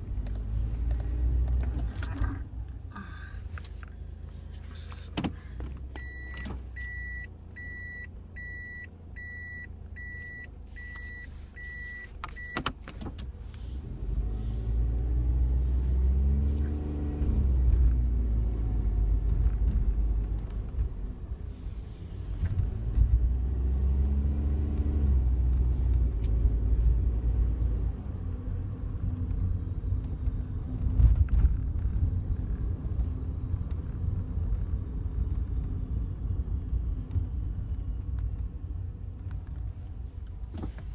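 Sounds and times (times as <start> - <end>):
car engine: 0.0 - 40.9
road rumble: 0.0 - 40.9
electronic warning beep: 6.0 - 12.6
faint clicks in car cabin: 12.2 - 13.3.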